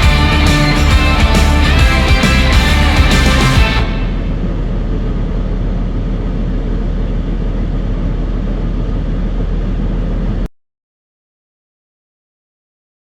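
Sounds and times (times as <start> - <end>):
farm machinery engine rumbling: 0.0 - 10.4.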